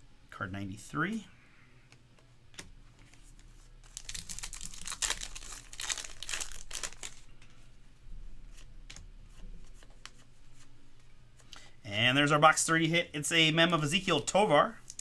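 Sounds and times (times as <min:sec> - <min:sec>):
wrapper tearing and crinkling: 0:03.8 - 0:07.3.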